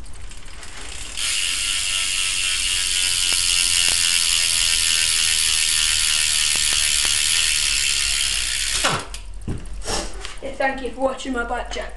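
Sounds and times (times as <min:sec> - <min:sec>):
bike hub ratchet clicking: 0:00.0 - 0:09.4.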